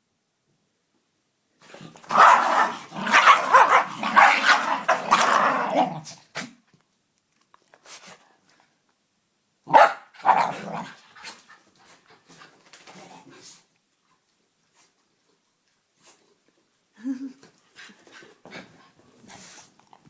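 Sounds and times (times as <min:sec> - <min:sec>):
dog growling and barking: 0:01.8 - 0:06.2, 0:09.7 - 0:11.0.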